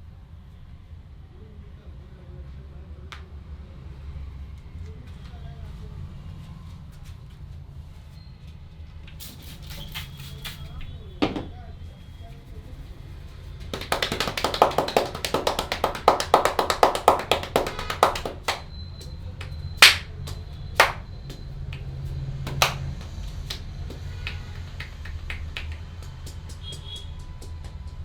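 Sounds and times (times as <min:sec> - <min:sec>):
hands slapping and clapping rapidly: 0:13.6 - 0:28.0
loud single hand slaps: 0:19.8 - 0:21.0.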